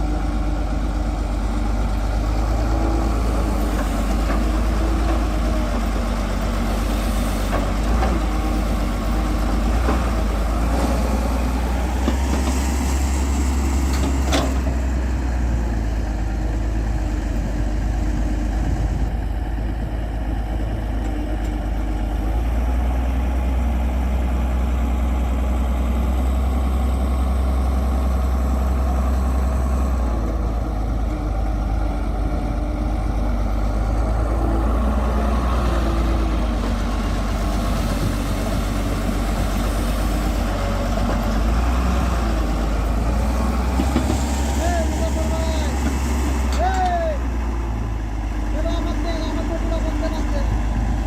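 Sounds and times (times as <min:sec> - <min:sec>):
diesel engine droning: 0:00.0 - 0:51.0
short knocks: 0:43.7 - 0:44.4.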